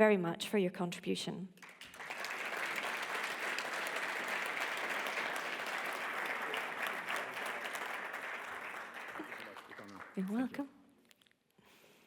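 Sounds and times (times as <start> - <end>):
audience applauding: 1.6 - 10.7.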